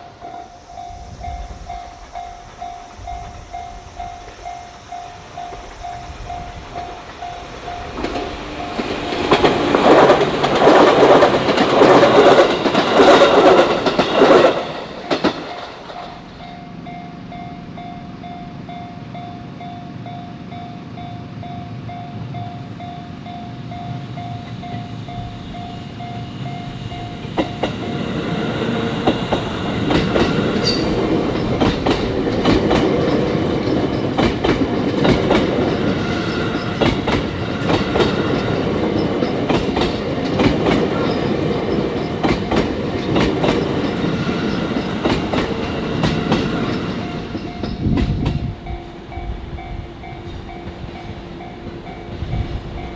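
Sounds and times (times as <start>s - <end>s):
level-crossing bell ringing: 0.0s - 9.0s, 30.6s - 31.5s
train wheels clacking on rails: 0.0s - 18.4s, 22.4s - 52.9s.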